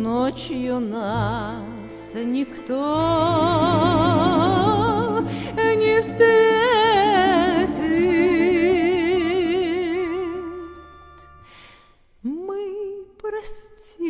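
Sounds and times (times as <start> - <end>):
steady accompaniment: 1.2 - 11.5
slow melody with vibrato: 1.2 - 11.7.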